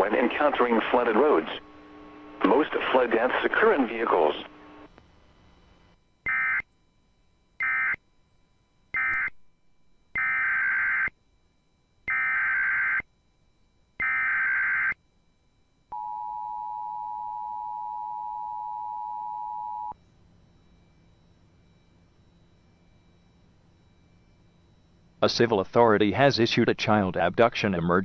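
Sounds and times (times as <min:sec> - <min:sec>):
two-tone attention signal: 0:15.9 - 0:20.0.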